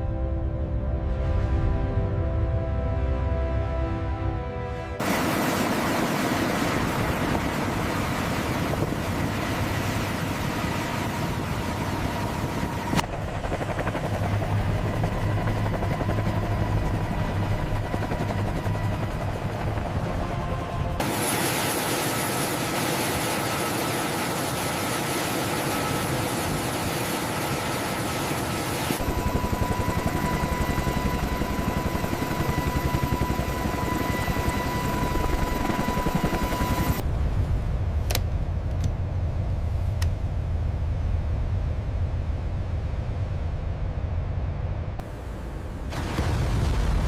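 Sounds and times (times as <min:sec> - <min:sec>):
helicopter rotor: 0:05.0 - 0:37.0.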